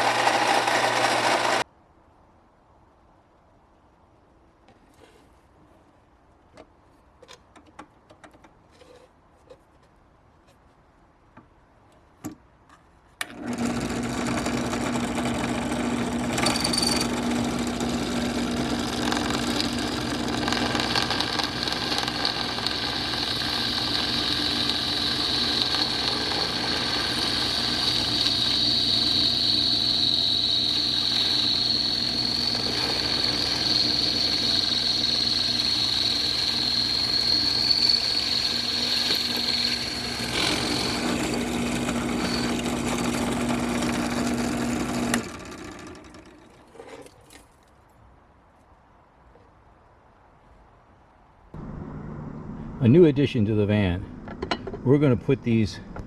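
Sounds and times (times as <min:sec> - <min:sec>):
motor humming and whining: 0:00.0 - 0:01.6, 0:13.3 - 0:46.2, 0:51.6 - 0:52.8.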